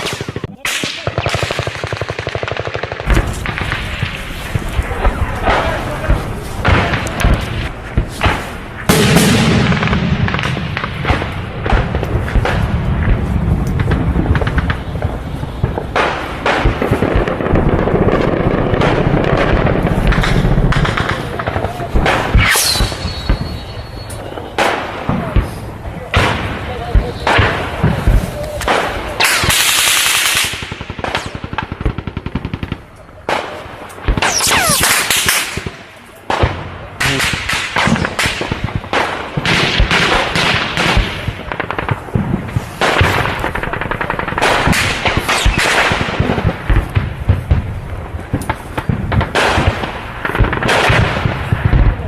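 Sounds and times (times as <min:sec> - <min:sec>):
automatic rifle fire: 0:34.1 - 0:35.8.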